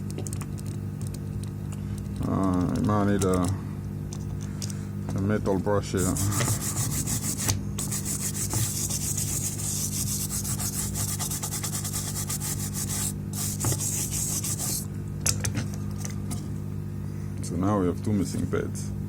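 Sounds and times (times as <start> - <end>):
metal brush scrubbing circuit board: 6.0 - 14.9.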